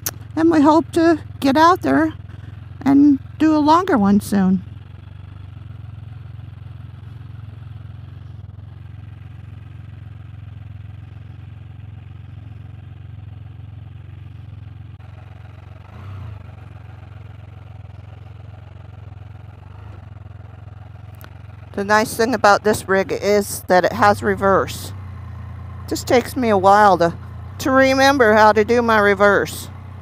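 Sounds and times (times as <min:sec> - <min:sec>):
engine droning: 0:00.0 - 0:30.0.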